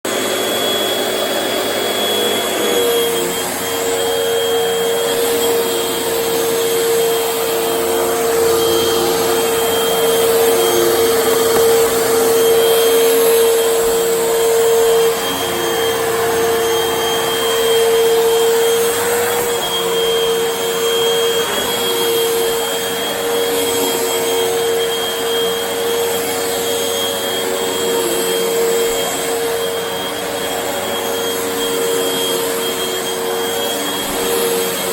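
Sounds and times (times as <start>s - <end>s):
vacuum cleaner running: 0.0s - 34.9s.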